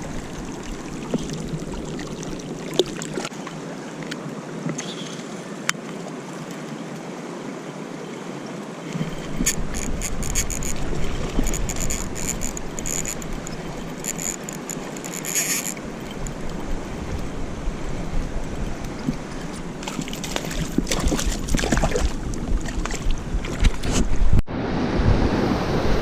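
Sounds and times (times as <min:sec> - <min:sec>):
stream water flowing: 0:00.0 - 0:24.4
wind buffeting microphone: 0:09.0 - 0:26.0
high-pitched ticks: 0:11.4 - 0:16.3.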